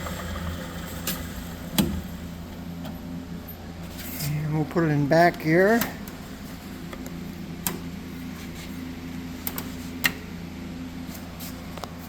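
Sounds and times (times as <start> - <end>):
milling machine motor humming: 0.0 - 3.8.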